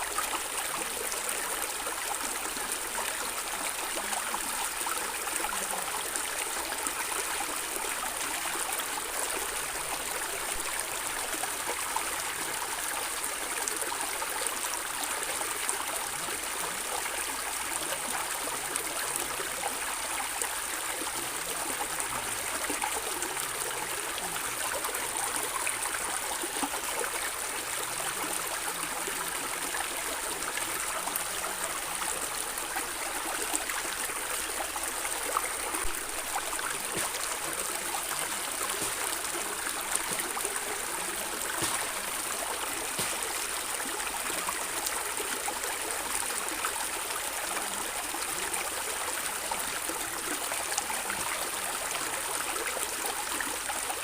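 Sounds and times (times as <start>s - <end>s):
stream gurgling over stones: 0.0s - 54.0s
small water splashes: 35.8s - 44.0s.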